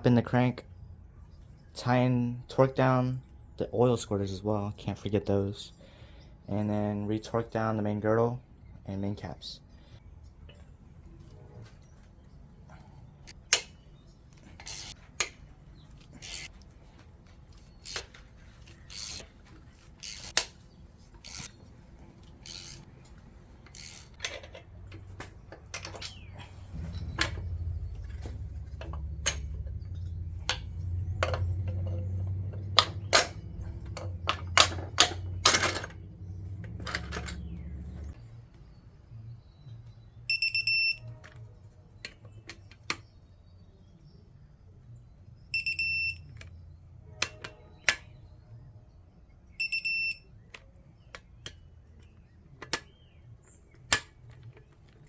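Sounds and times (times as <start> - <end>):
metal parts and tools clinking: 22.2 - 38.1
low rumble: 26.4 - 34.4
short electronic beep: 40.3 - 41.1, 45.5 - 46.3, 49.6 - 50.3.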